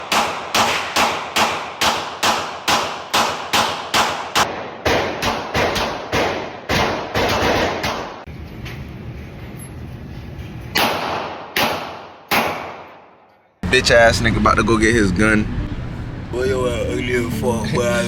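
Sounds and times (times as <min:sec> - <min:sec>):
rapid gunfire: 0:00.0 - 0:08.3.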